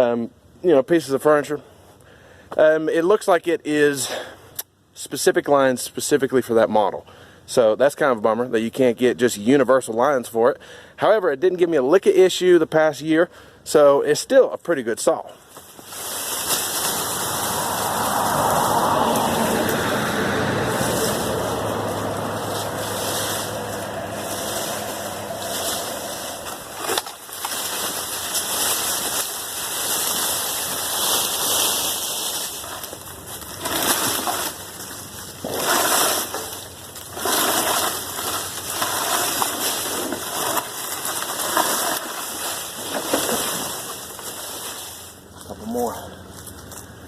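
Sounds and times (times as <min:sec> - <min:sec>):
chainsaw engine running: 0:16.4 - 0:47.0
chainsaw cutting wood: 0:32.5 - 0:44.5.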